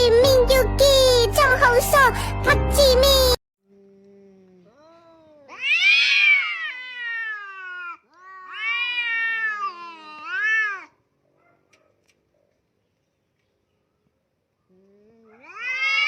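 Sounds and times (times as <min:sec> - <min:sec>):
cat meowing: 0:04.9 - 0:11.0, 0:15.3 - 0:16.0.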